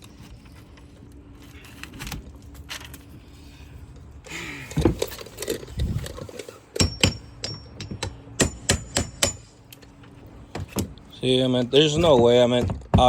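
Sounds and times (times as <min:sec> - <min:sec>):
hammer blows with metallic ring: 0:06.8 - 0:09.6
rough knocking and scraping: 0:11.6 - 0:13.0.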